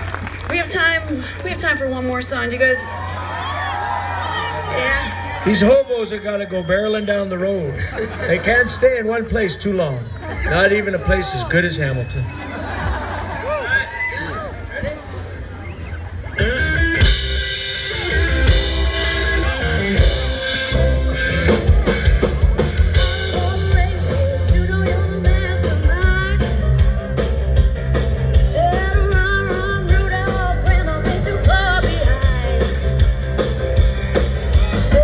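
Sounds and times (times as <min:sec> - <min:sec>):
live rock band playing: 0:16.2 - 0:35.0.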